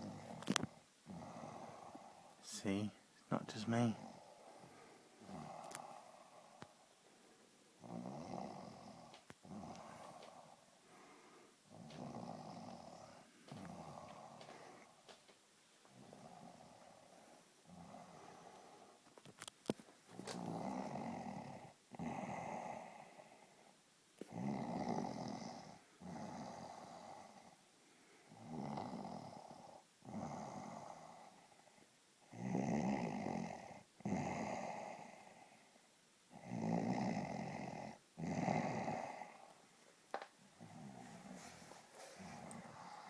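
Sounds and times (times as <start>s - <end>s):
person snoring: 0.0s - 6.6s, 7.8s - 14.9s, 24.3s - 27.6s, 28.3s - 31.4s, 36.3s - 39.5s, 40.6s - 43.0s.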